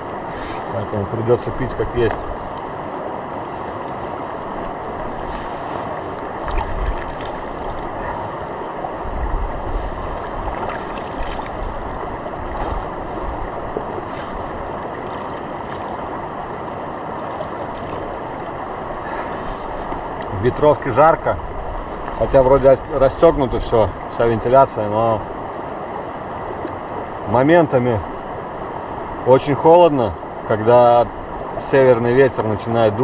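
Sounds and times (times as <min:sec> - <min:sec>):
wind buffeting microphone: 0:00.0 - 0:24.6.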